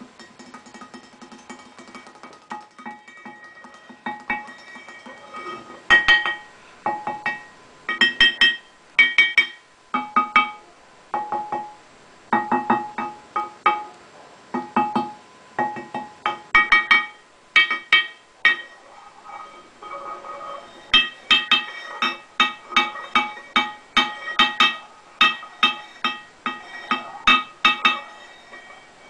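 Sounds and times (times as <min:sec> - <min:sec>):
tuned stones struck ringing: 0:05.9 - 0:10.6, 0:14.6 - 0:18.8, 0:19.4 - 0:29.0.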